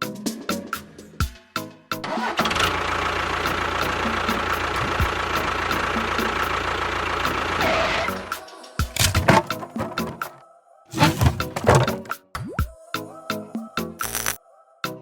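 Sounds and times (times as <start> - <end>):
engine running: 2.4 - 8.3.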